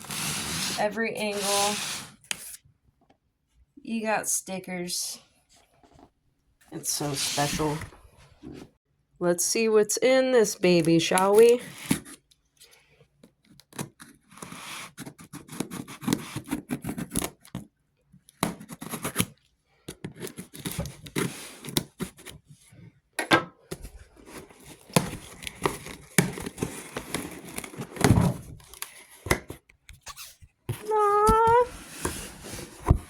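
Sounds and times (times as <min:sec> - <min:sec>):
cardboard tearing and scraping: 0:00.0 - 0:02.4, 0:13.8 - 0:17.6, 0:18.5 - 0:19.4, 0:24.2 - 0:29.3.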